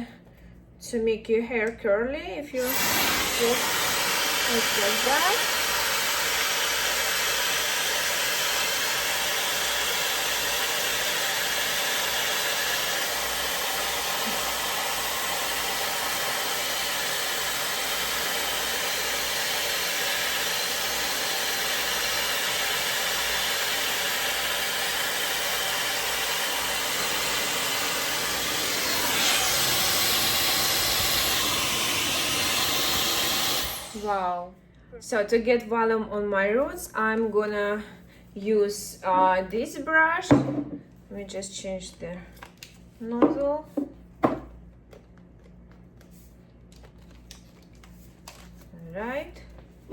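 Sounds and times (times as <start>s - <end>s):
hair dryer brush blowing air: 2.6s - 34.4s.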